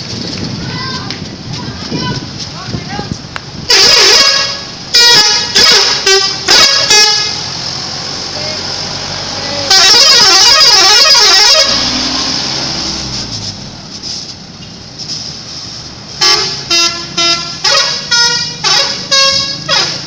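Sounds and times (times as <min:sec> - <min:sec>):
short horn toots: 0:03.7 - 0:07.4
bus musical air horns: 0:03.7 - 0:07.6, 0:09.6 - 0:13.4, 0:16.1 - 0:20.0.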